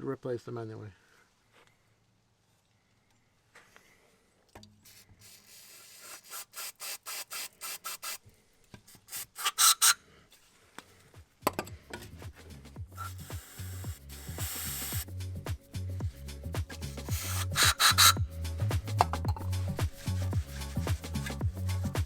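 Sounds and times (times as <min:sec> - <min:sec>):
hand scraping brake parts: 0:07.6 - 0:10.9, 0:16.8 - 0:21.4.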